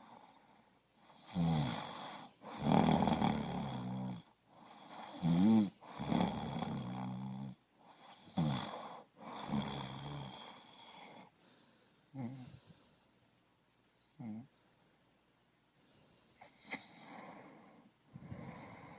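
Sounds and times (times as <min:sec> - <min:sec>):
quiet breathing: 0:00.0 - 0:18.9
person snoring: 0:01.0 - 0:11.3, 0:12.1 - 0:13.0, 0:16.3 - 0:18.9.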